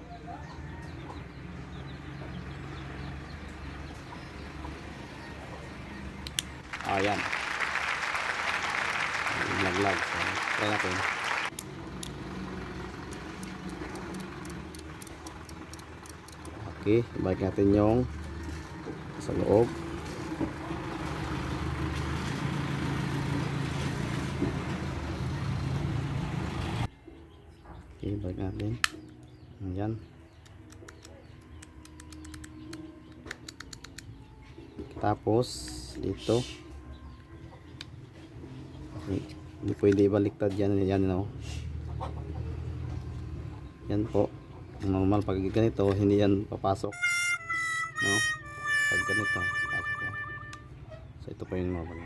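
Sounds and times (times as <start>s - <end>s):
chickens clucking: 0.0s - 6.2s, 41.6s - 44.8s
vehicle engine idling: 0.1s - 7.5s, 9.5s - 26.9s, 36.6s - 51.2s.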